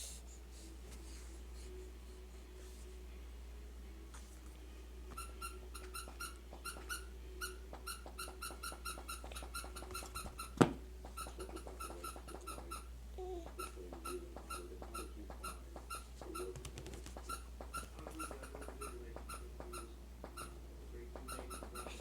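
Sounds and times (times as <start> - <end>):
baby squeaking: 5.1 - 10.6, 11.2 - 13.8, 21.3 - 22.0.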